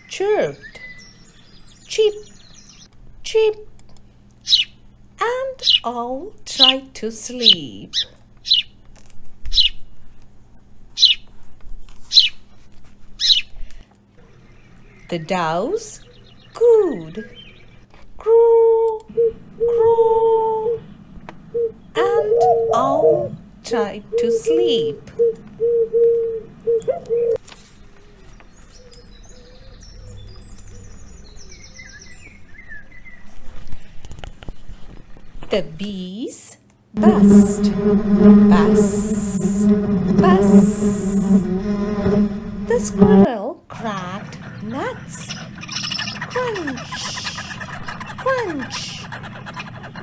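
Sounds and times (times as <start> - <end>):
sparrows chirping: 0.0 - 2.9, 4.4 - 8.8, 9.5 - 9.8, 11.0 - 11.3, 12.1 - 12.4, 13.2 - 13.5, 14.2 - 17.9, 19.1 - 33.3, 43.9 - 50.0
dove cooing: 18.5 - 27.4, 44.2 - 50.0.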